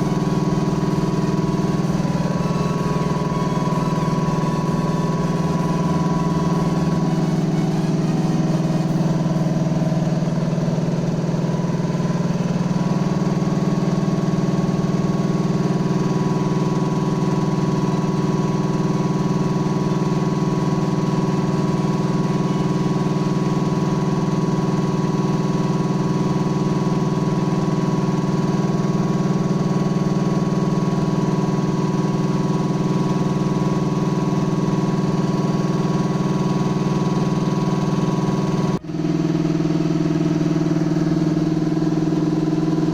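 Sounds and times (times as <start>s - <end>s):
electric air compressor running: 0.0s - 25.2s.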